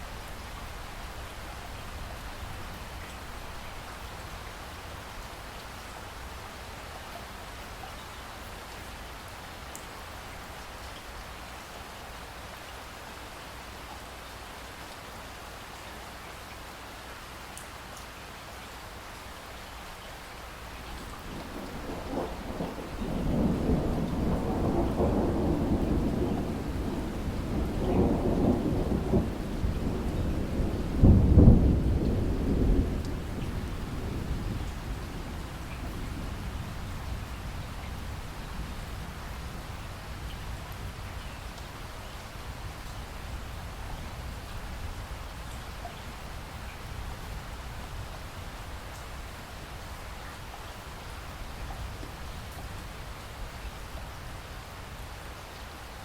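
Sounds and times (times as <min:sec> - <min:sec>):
steady rain falling: 0:00.0 - 0:56.0
rolling thunder: 0:21.2 - 0:40.3.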